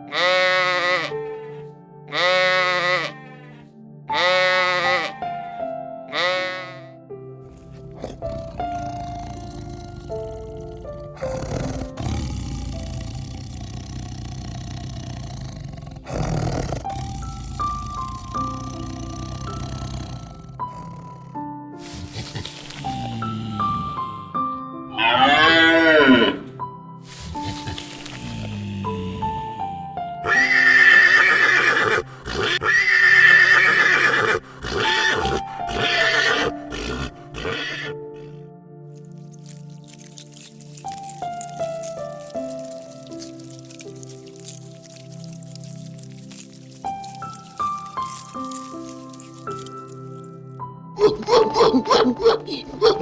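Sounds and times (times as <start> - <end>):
light background music: 0.0 - 53.0
horse whinnying: 0.1 - 5.3, 24.9 - 29.6, 30.2 - 38.4
large animal roaring: 7.6 - 38.4.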